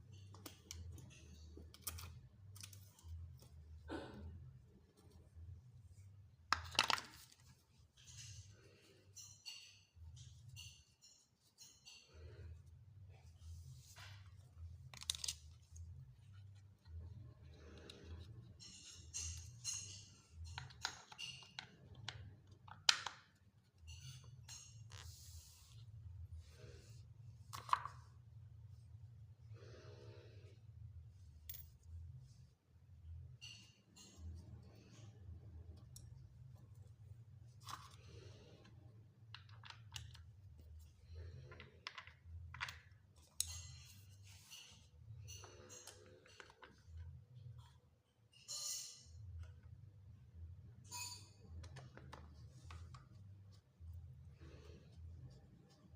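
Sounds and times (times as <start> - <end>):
low steady hum: 0.0 - 55.9
hands handling plastic parts: 6.4 - 8.5, 13.5 - 25.8, 37.5 - 47.7
clicks of small parts handled: 14.8 - 15.8.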